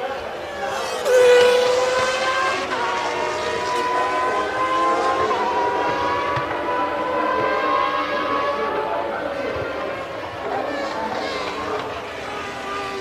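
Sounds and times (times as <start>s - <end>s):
racing car engine at high revs: 0.0s - 13.0s.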